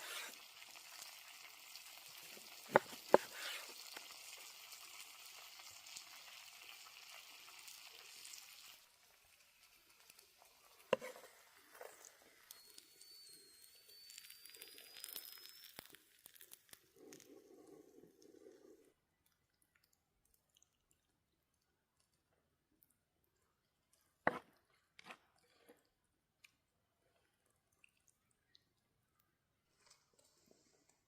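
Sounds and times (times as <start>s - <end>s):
food sizzling as it fries: 0.0s - 17.0s.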